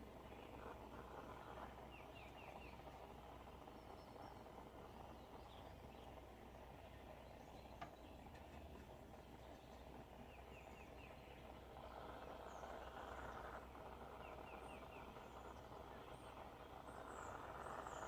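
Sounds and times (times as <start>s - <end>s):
torch flame hissing: 0.0s - 6.8s
small birds chirping: 0.0s - 18.0s.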